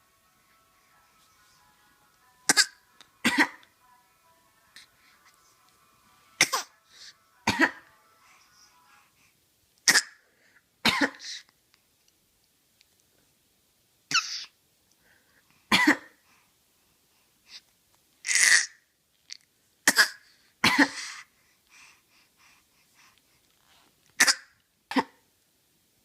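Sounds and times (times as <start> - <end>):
person coughing: 2.5 - 3.6, 7.5 - 7.9, 19.9 - 21.1
pet making cough-like sounds: 19.9 - 21.2, 24.2 - 25.2.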